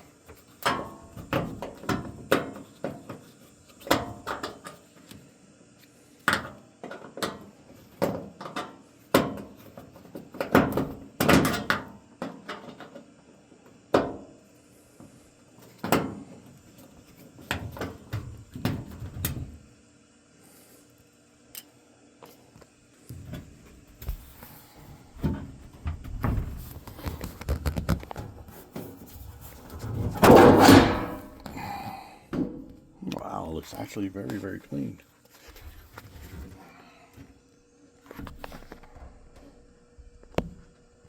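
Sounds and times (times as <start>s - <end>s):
knocks and clunks on metal panels: 25.2s - 28.9s, 29.5s - 31.5s, 32.3s - 32.8s.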